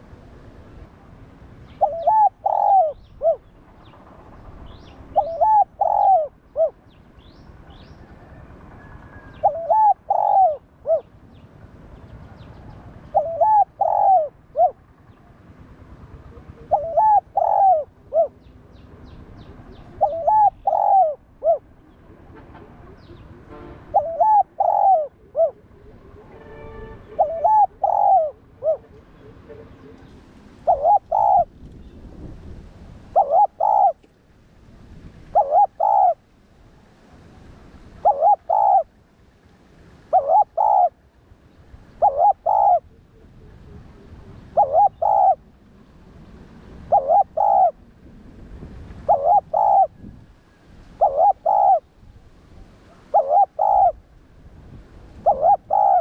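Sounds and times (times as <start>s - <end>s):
dove cooing: 1.7s - 3.5s, 5.0s - 6.8s, 8.2s - 11.1s, 13.0s - 15.4s, 16.0s - 18.4s, 19.7s - 21.7s, 23.9s - 26.1s, 27.1s - 31.5s, 33.1s - 34.1s, 35.3s - 36.2s, 38.0s - 38.9s, 40.1s - 41.0s, 42.0s - 45.5s, 46.8s - 47.8s, 49.0s - 51.9s, 52.9s - 54.0s, 55.2s - 56.0s.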